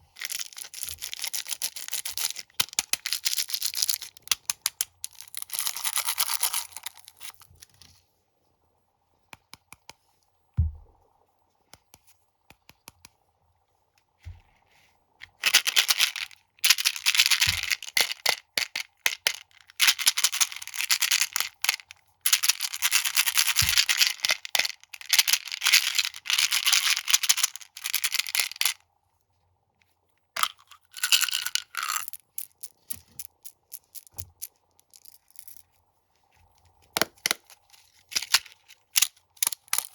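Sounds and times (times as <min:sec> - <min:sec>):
low thumps: 0:10.6 - 0:11.0.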